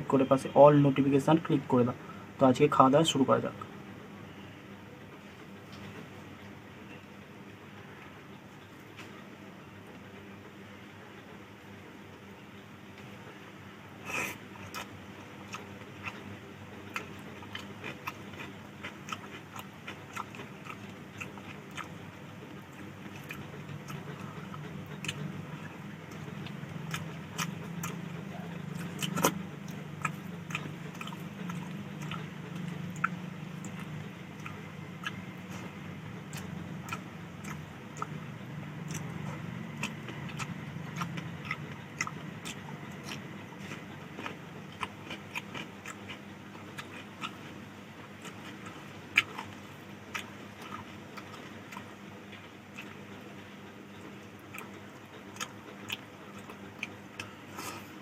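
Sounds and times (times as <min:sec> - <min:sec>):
person chewing with wet smacks: 0:14.1 - 0:58.0.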